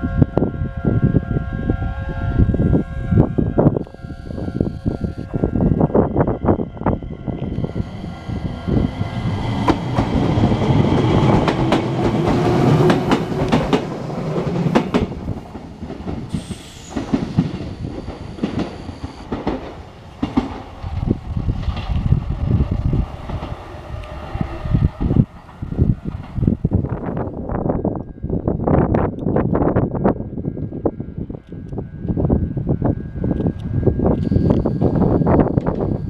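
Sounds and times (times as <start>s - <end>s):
electric train motor whine: 0.1s - 36.0s
train wheels clickety-clack: 9.2s - 22.2s.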